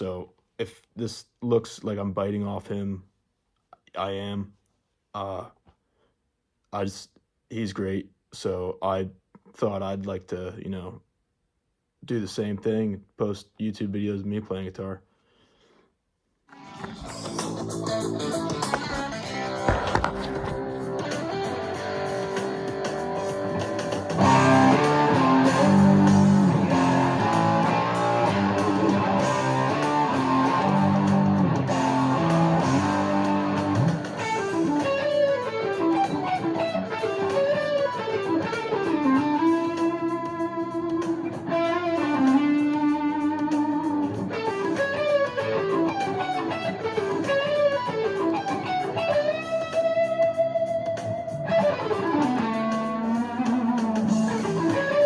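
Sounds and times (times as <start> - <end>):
electric guitar playing: 16.5 - 55.0.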